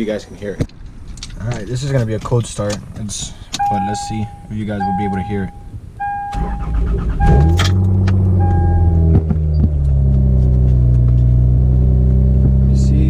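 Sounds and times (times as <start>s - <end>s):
car engine starting and idling: 1.9s - 13.0s
repeated beep: 3.6s - 7.7s, 8.4s - 9.6s.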